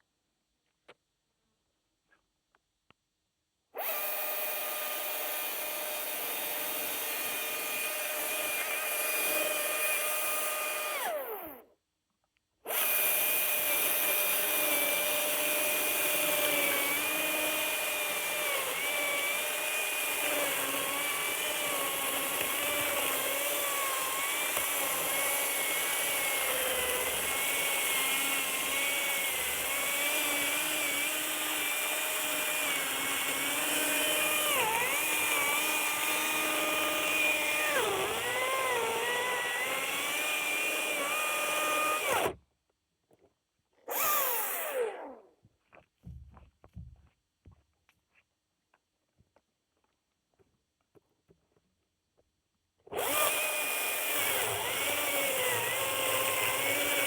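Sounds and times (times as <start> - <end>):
electric chainsaw cutting wood: 3.8 - 11.6, 12.7 - 42.4, 43.9 - 45.3, 52.9 - 57.0.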